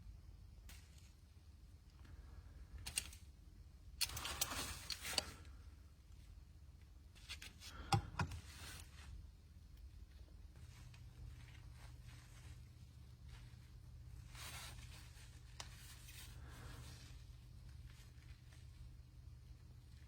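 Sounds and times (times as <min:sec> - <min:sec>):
rustling and scraping: 0:00.6 - 0:01.3, 0:04.0 - 0:05.6, 0:07.0 - 0:09.4, 0:10.0 - 0:20.0.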